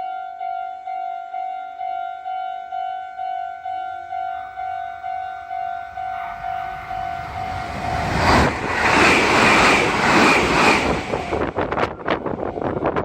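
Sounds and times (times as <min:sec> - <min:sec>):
railroad crossing bell ringing: 0:00.0 - 0:07.9
electric train rushing past: 0:04.6 - 0:13.0.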